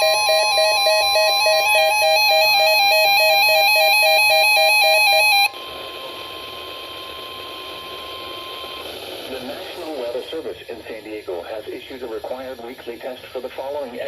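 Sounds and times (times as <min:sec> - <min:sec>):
two-pitch electronic alarm: 0:00.0 - 0:08.9
radio static: 0:08.8 - 0:14.0.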